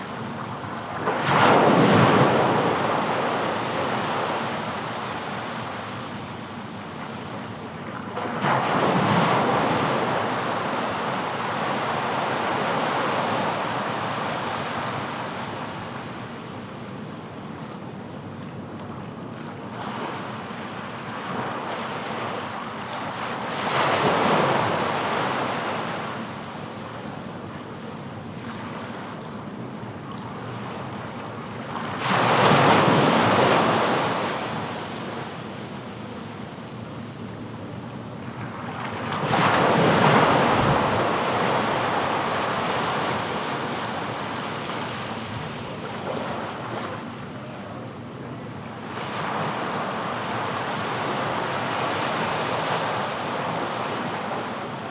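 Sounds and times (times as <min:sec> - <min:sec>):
sea waves crashing on shore: 0:39.2 - 0:45.4.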